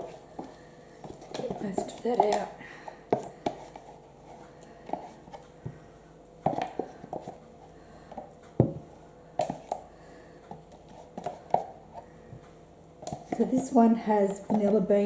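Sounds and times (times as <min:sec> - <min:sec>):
spatula scraping yogurt container: 0:00.0 - 0:05.4, 0:06.4 - 0:08.2, 0:10.7 - 0:12.1, 0:13.0 - 0:14.9.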